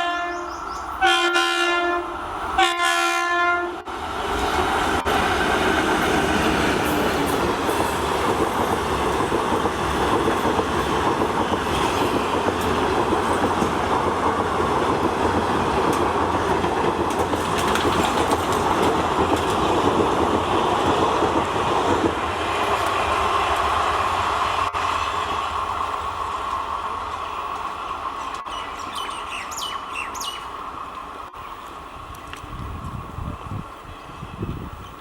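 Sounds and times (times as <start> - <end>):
train rumbling along track: 0.0 - 35.0
wheels clicking on rails: 4.3 - 23.8.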